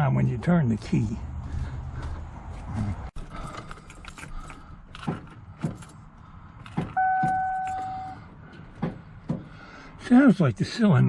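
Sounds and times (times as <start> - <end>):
ignition key clicks: 6.6 - 8.2
electronic chime tone: 7.0 - 8.2.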